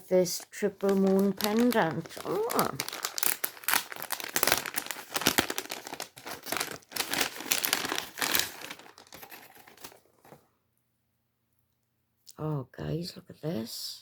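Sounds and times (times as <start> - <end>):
packaging crinkling: 0.5 - 10.4.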